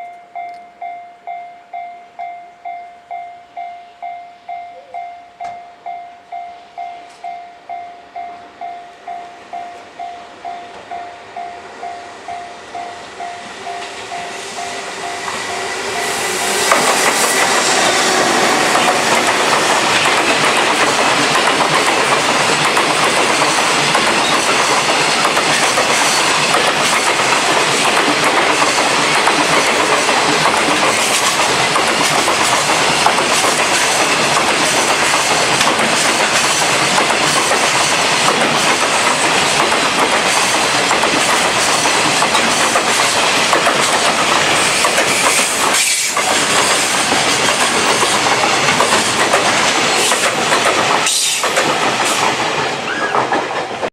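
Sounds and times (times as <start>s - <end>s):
freight train rolling past: 0.0s - 53.9s
wheels clattering over rail joints: 15.2s - 53.9s.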